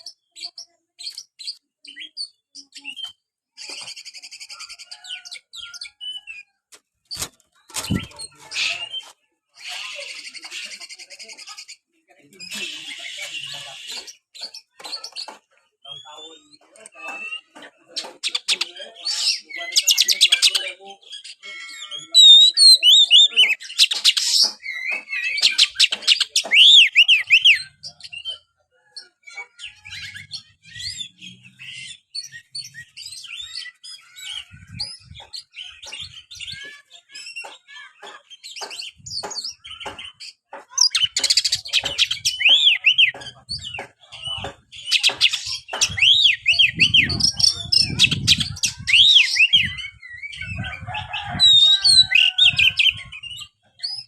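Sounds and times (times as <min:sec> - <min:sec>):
bird singing trills and whistles: 0:00.0 - 0:06.6, 0:12.4 - 0:54.0
soft bird clicking calls: 0:34.2 - 0:49.6.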